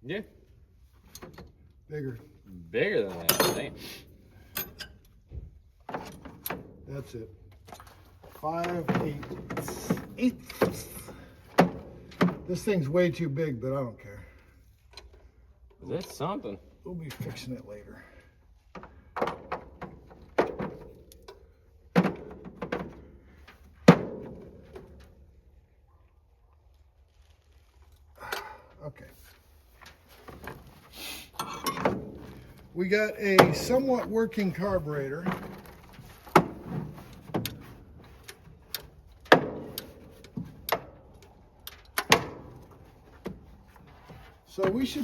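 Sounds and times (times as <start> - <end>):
metal knocks and clanks: 7.9 - 12.7, 31.4 - 45.0.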